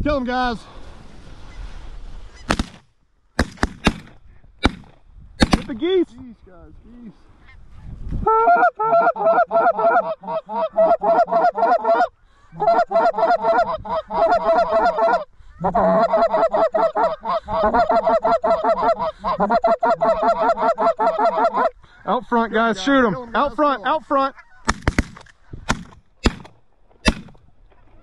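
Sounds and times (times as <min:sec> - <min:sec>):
goose honking: 0:08.3 - 0:21.8.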